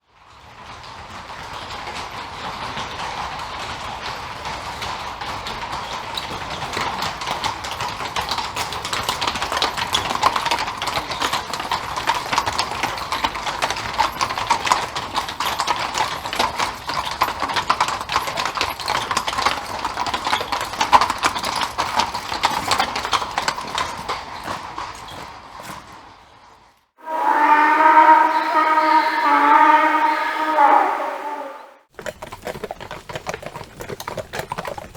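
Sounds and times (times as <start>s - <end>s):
hooves clip-clopping: 0.0s - 26.9s, 31.8s - 34.9s
cart rattling: 0.3s - 26.8s
steady pitched tone: 27.0s - 31.8s.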